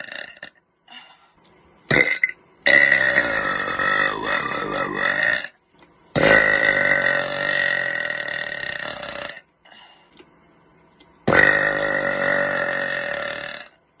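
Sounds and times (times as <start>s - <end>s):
person burping: 0.0s - 0.6s, 1.9s - 5.6s, 6.2s - 9.5s, 11.2s - 13.8s.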